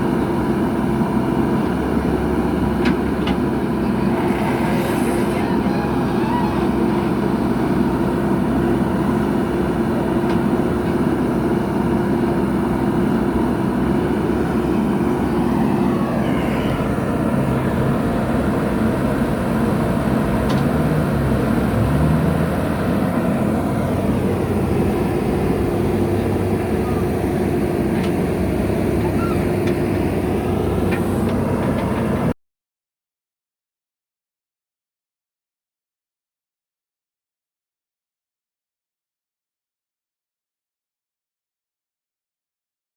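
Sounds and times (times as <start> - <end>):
heavy machinery diesel engine: 0.0 - 32.4.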